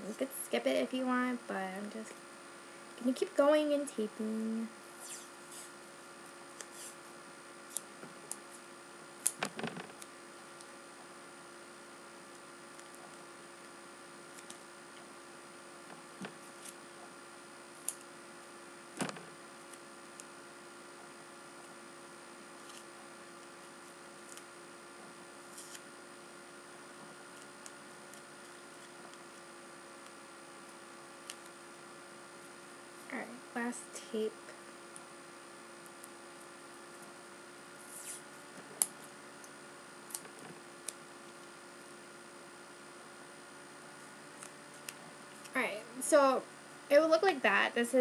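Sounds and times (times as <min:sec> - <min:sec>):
steady electrical hum: 0:00.0 - 0:48.0
tape rustling and clicks: 0:12.3 - 0:15.1, 0:22.6 - 0:25.9, 0:27.0 - 0:31.6, 0:37.8 - 0:41.5.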